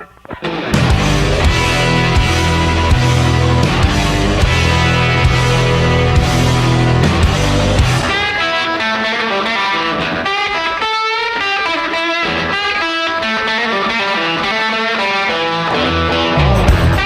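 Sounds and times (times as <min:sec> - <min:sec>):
distorted electric guitar riff: 0:00.0 - 0:17.0
heavy bass and drums: 0:00.8 - 0:08.4, 0:16.4 - 0:17.0.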